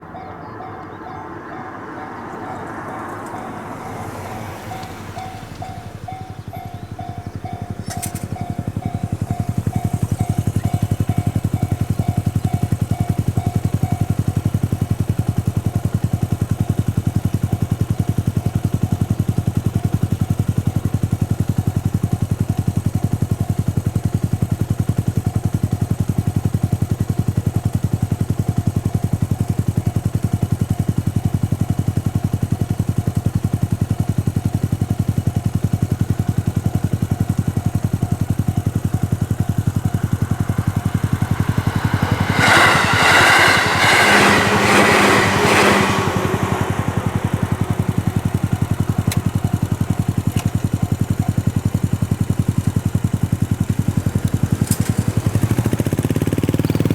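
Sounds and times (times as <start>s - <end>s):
level crossing alarm ringing: 0.0s - 14.3s
train running noise: 0.0s - 16.0s, 36.4s - 50.7s, 53.2s - 56.9s.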